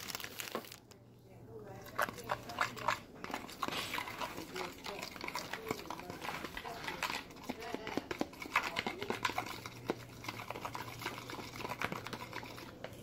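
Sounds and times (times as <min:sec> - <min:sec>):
pan crackling on stovetop: 0:00.0 - 0:00.9
low steady hum: 0:00.0 - 0:13.0.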